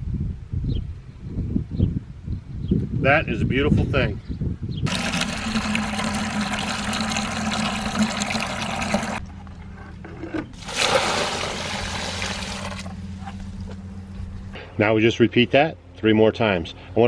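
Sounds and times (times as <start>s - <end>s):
water pouring and splashing: 4.9s - 9.2s, 10.6s - 13.2s
low steady hum: 4.9s - 16.0s.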